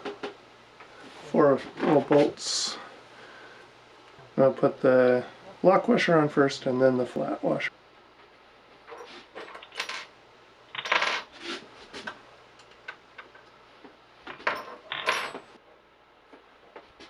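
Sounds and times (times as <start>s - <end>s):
steel bolts and washers clinking: 14.3s - 15.6s.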